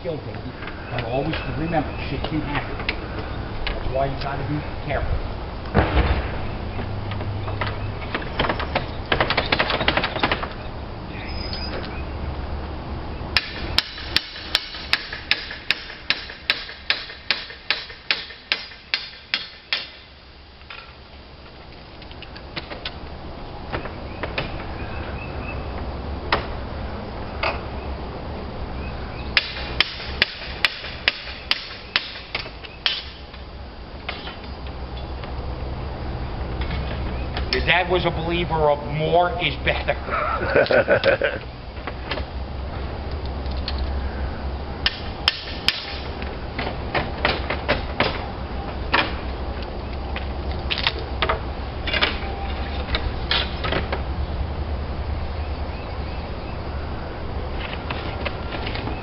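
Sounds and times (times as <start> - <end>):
hammer striking nails: 13.4 - 20.0, 29.4 - 33.2, 44.8 - 46.0.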